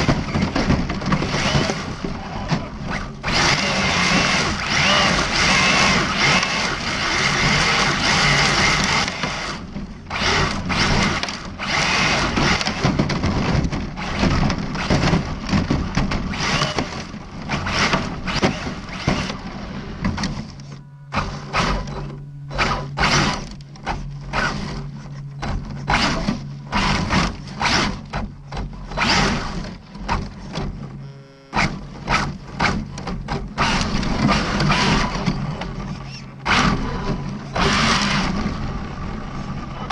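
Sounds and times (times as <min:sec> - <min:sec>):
electric motor whirring: 0:02.9 - 0:12.8, 0:16.3 - 0:19.5, 0:20.5 - 0:28.2, 0:30.9 - 0:39.9.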